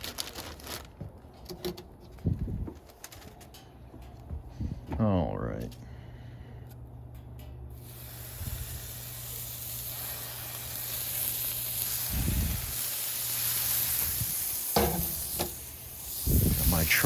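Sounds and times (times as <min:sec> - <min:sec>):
meat sizzling on a griddle: 0:07.8 - 0:17.0.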